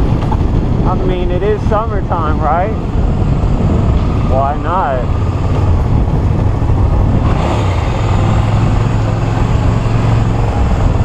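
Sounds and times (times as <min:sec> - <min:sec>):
motorcycle engine cruising: 0:00.0 - 0:11.0.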